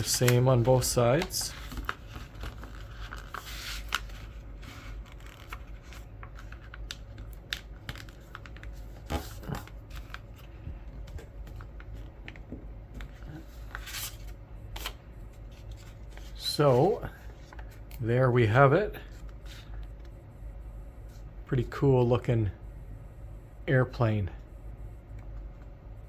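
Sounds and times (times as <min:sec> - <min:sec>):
paper being folded and creased: 0:00.0 - 0:18.0.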